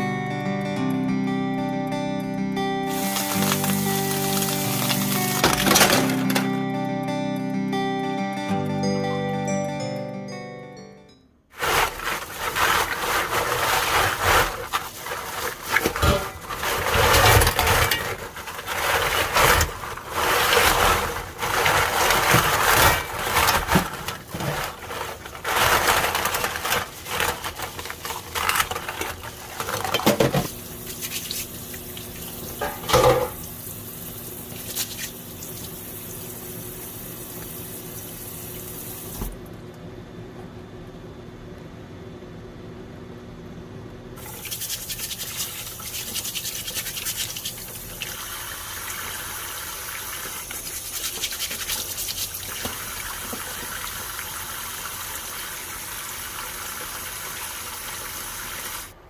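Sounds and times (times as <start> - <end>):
dish clatter: 5.3 - 6.5, 11.6 - 30.5, 32.6 - 33.4.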